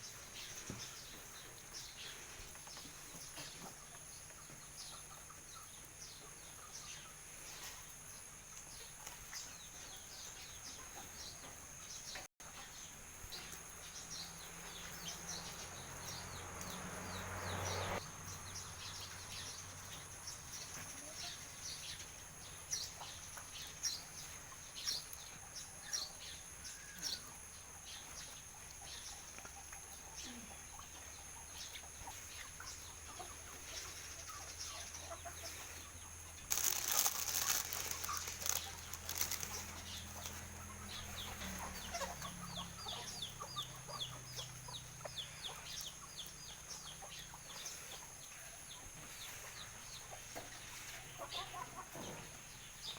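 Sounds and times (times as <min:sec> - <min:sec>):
chickens clucking: 0:00.4 - 0:13.8, 0:26.3 - 0:52.9
chickens pecking: 0:28.2 - 0:52.7
wings flapping: 0:36.5 - 0:40.4.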